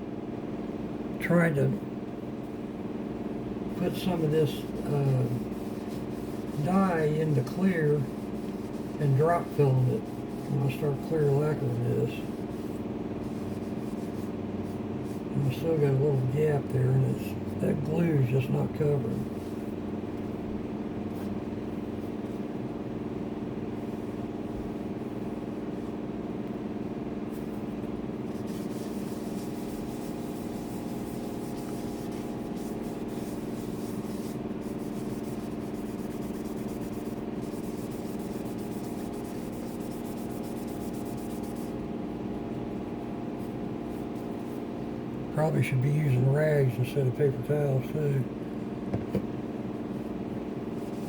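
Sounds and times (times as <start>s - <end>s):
machine hum: 0.0s - 51.0s
paper towel rubbing on wood: 4.0s - 16.4s, 27.3s - 41.8s, 50.1s - 51.0s.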